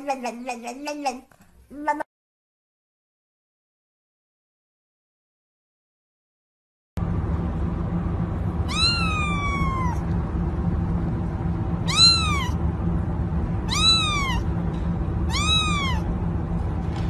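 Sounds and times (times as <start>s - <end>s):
steady low hum: 7.0s - 17.0s
cat meowing: 8.7s - 10.1s, 11.8s - 12.6s, 13.6s - 14.5s, 15.3s - 16.1s.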